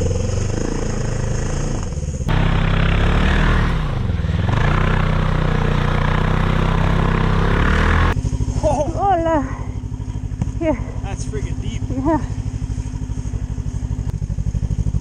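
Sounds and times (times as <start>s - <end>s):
snowmobile engine revving: 0.0s - 9.7s, 10.6s - 12.4s.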